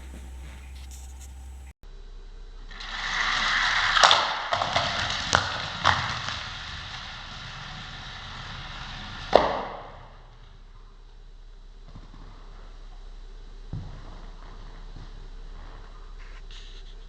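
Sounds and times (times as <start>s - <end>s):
toy car rattling down plastic track: 2.8s - 9.8s.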